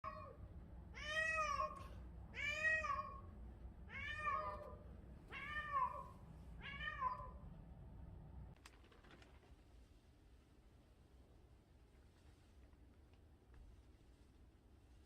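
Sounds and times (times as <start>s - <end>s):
cat meowing loudly: 3.9s - 7.4s.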